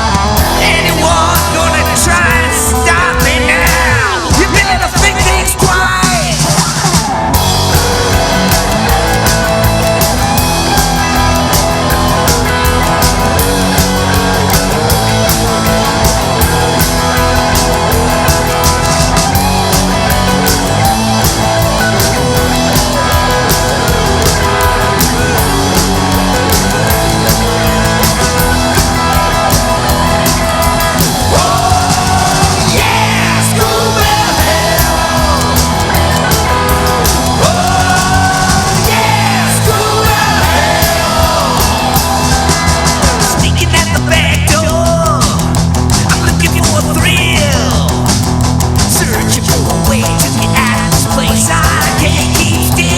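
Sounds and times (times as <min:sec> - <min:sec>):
drum kit beat: 0:00.0 - 0:52.9
loud rock band music: 0:00.0 - 0:52.9.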